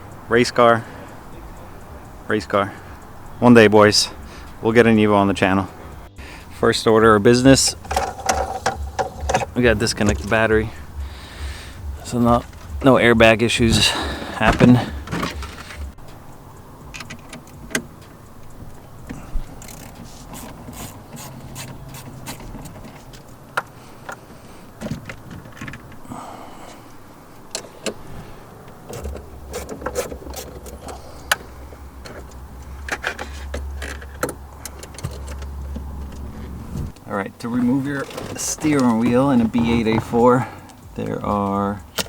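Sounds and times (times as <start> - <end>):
low steady hum: 2.9 - 17.0
clicks and metallic knocks: 7.7 - 10.4, 14.4 - 16.2, 16.8 - 20.8, 28.6 - 36.3.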